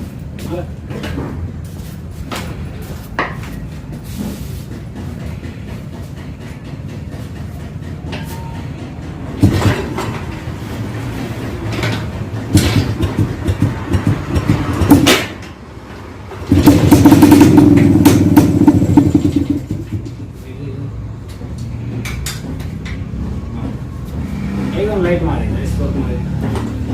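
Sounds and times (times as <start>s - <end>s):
motorcycle engine humming: 11.3s - 20.4s
clattering kick-start: 16.4s - 20.2s.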